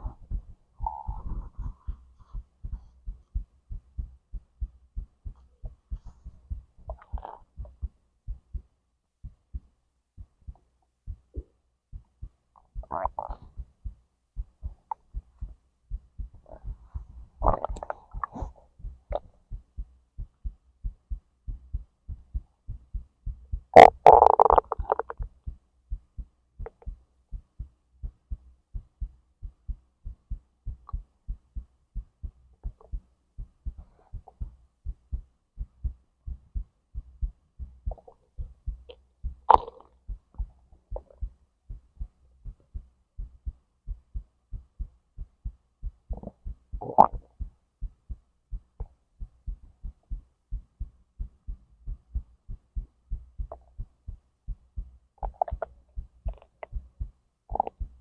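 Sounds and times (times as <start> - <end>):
stomach gurgles: 0.0 - 1.8, 6.9 - 7.7, 12.7 - 13.6, 17.4 - 19.3, 23.8 - 25.3, 37.9 - 38.2, 38.9 - 41.2, 46.1 - 47.3, 55.2 - 56.8, 57.5 - 57.9
heartbeat thudding: 0.0 - 58.0.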